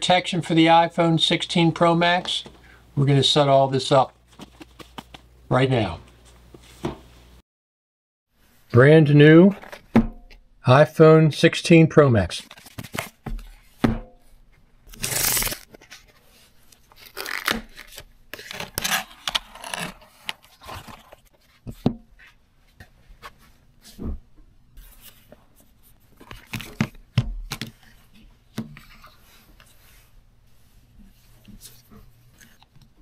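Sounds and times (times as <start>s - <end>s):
paper seal strip tearing: 14.9s - 15.7s
cardboard scraping and rustling: 15.0s - 22.4s.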